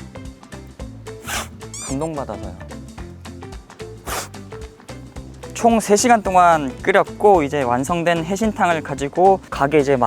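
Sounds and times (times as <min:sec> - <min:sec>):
background music with held notes: 0:00.0 - 0:10.0
short hissing swish: 0:01.2 - 0:01.6, 0:04.0 - 0:04.4.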